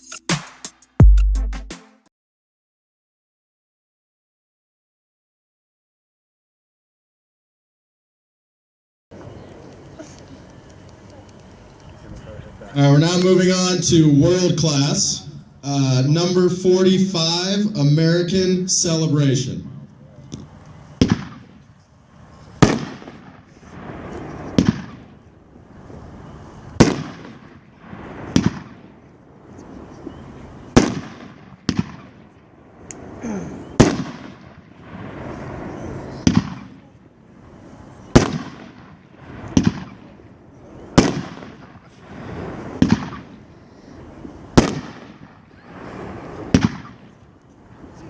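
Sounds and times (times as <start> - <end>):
fireworks banging with echo: 20.4 - 21.7, 22.6 - 25.2, 26.8 - 28.9, 30.7 - 32.4, 33.8 - 36.9, 38.1 - 40.1, 40.9 - 43.5, 44.6 - 47.2.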